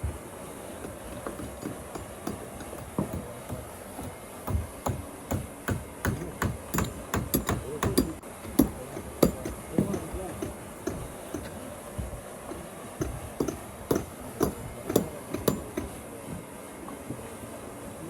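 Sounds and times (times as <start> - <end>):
hammer driving nails into wood: 0.8 - 11.6, 12.5 - 16.0.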